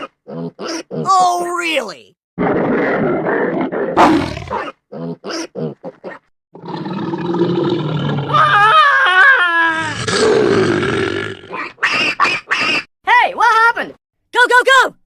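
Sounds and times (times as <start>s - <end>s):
growling animal call: 2.4s - 12.8s
animal grunts: 2.5s - 8.3s.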